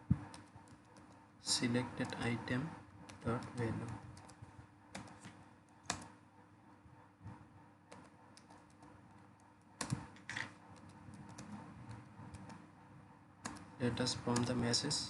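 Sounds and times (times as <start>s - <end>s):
computer keyboard typing: 0.2s - 1.2s, 3.1s - 6.2s, 7.9s - 12.6s, 13.4s - 14.8s.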